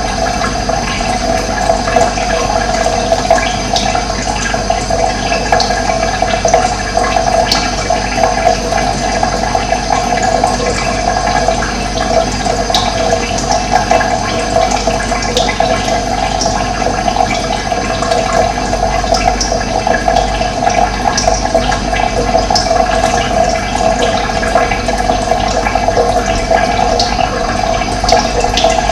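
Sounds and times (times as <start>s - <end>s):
running water: 0.0s - 28.9s.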